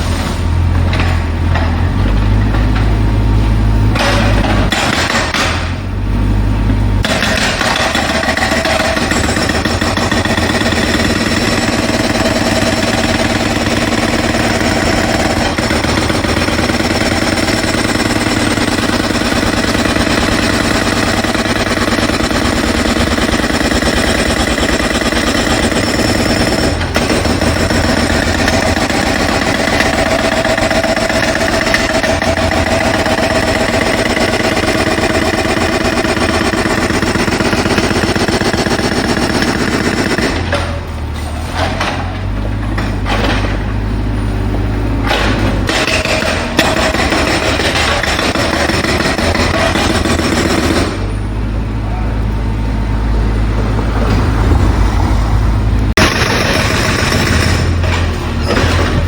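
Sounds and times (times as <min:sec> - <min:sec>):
jackhammer hammering: 0:03.9 - 0:05.8, 0:07.0 - 0:40.9, 0:45.0 - 0:51.3, 0:55.9 - 0:59.0.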